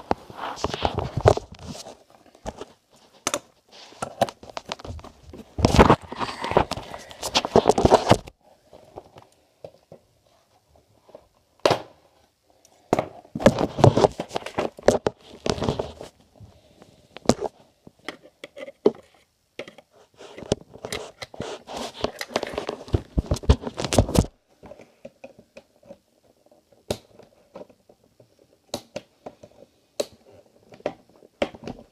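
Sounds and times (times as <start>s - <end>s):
packaging crinkling and rustling: 0.0s - 9.3s, 13.4s - 16.3s, 20.2s - 24.4s.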